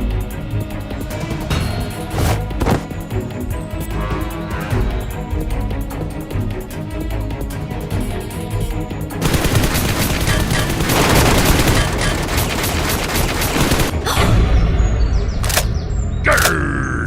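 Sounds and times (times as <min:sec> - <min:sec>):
background music: 0:00.0 - 0:17.0
rapid gunfire bursts: 0:09.2 - 0:14.0.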